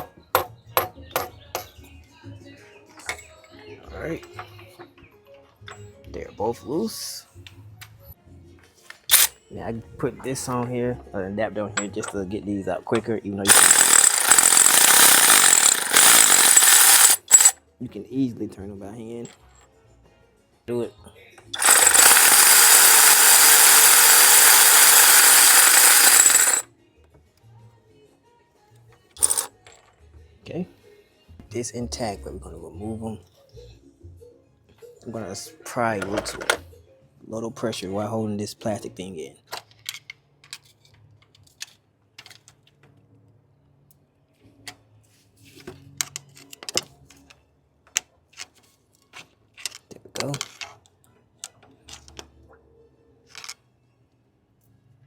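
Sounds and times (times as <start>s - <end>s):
power tool whirring: 9.1s - 9.3s, 13.5s - 17.6s, 21.6s - 26.6s, 29.2s - 29.5s.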